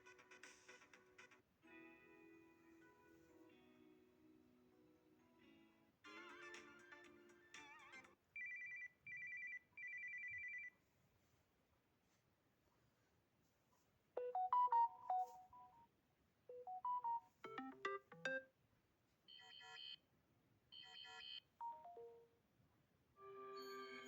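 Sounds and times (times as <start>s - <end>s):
phone notification chimes: 14.2s - 15.7s.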